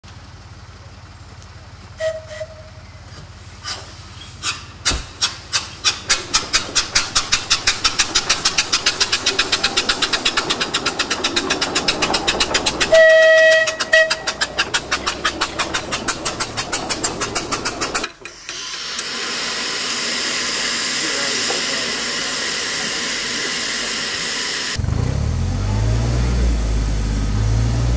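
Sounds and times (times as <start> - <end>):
locomotive exhaust beats: 0.1 - 18.5
locomotive whistle: 2.0 - 3.0, 7.7 - 16.0
steady hiss of air: 18.4 - 24.8.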